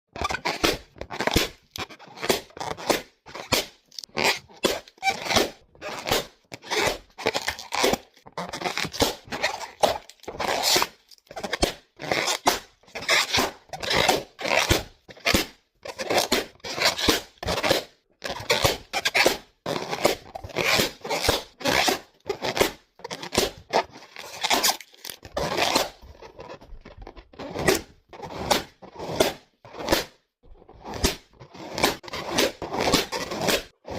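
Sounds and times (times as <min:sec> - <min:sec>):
paper ripping: 0:20.5 - 0:26.6.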